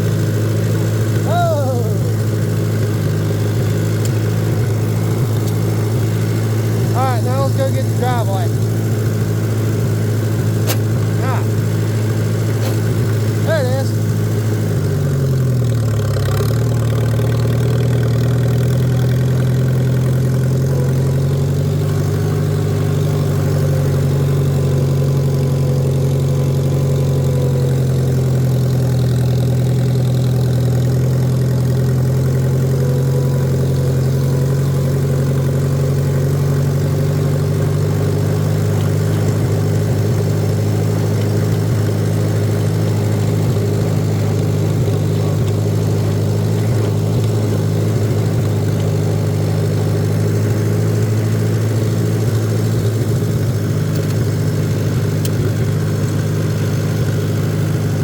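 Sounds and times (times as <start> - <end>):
tractor engine running: 0.0 - 58.0.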